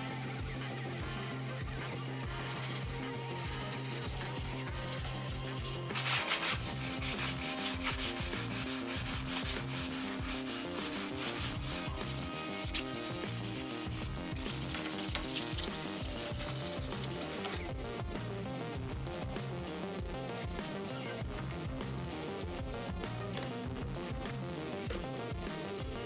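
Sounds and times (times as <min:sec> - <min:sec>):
sanding strokes on a surface: 0:00.0 - 0:01.3, 0:02.2 - 0:17.6
faint background music: 0:00.0 - 0:26.0.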